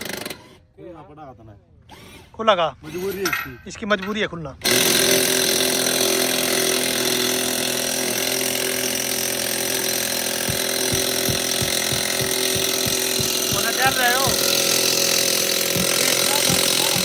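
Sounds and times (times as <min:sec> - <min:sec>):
power tool whirring: 0:00.0 - 0:00.6, 0:01.9 - 0:03.1, 0:04.6 - 0:17.0
regular knocking: 0:10.4 - 0:17.0.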